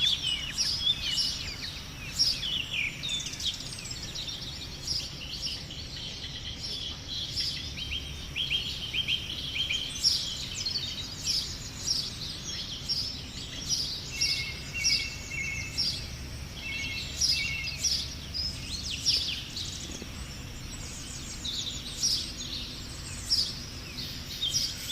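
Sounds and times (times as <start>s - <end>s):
low background rumble: 0.0s - 24.9s
songbirds chirping: 0.0s - 24.9s.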